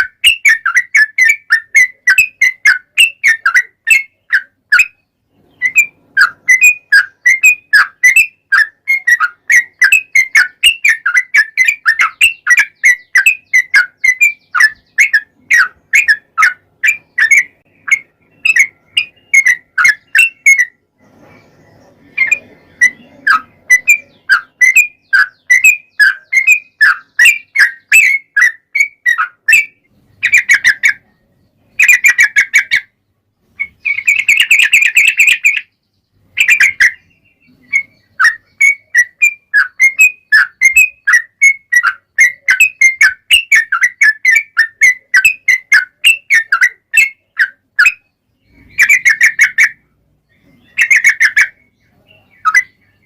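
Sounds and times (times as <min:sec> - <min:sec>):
bird singing whistled notes: 0:00.0 - 0:53.0
bird chattering rattle: 0:05.6 - 0:31.1, 0:31.8 - 0:32.9, 0:33.6 - 0:49.8, 0:50.5 - 0:51.6.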